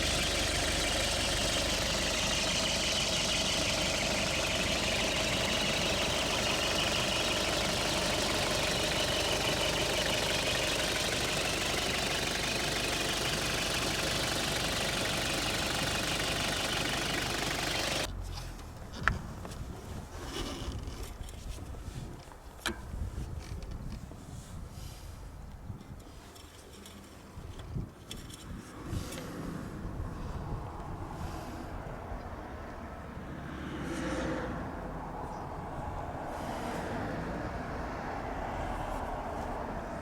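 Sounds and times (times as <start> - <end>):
diesel engine idling: 0.0 - 18.1.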